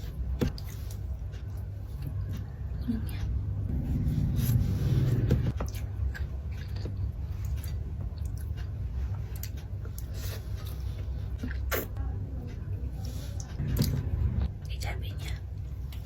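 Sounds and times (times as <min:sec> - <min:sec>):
steady low hum: 0:00.0 - 0:16.0
chewing food: 0:05.5 - 0:14.4.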